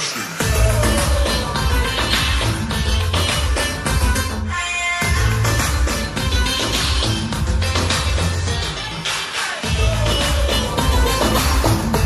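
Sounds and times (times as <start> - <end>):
instrumental dance music: 0.0 - 12.0
heavy pulsing bass beat: 0.4 - 4.4, 5.0 - 8.7, 9.6 - 12.0.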